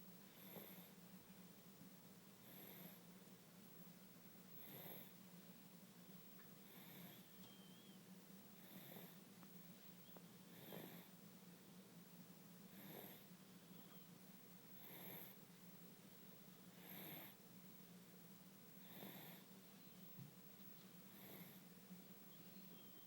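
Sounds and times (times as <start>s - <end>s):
steady low hum: 0.0s - 23.0s
baby snoring faintly: 0.3s - 1.0s, 2.4s - 3.1s, 4.6s - 5.2s, 6.6s - 7.8s, 8.6s - 9.2s, 10.5s - 11.2s, 12.7s - 13.3s, 14.8s - 15.4s, 16.7s - 17.4s, 18.8s - 19.5s, 21.1s - 21.7s.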